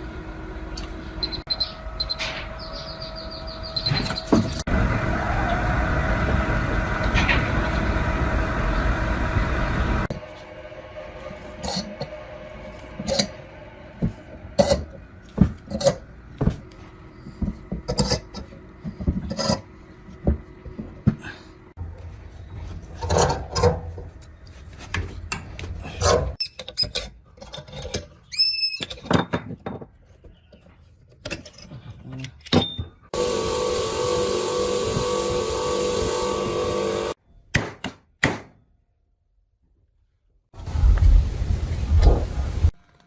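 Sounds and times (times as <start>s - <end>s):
metal parts and tools clicking: 26.4s - 29.2s.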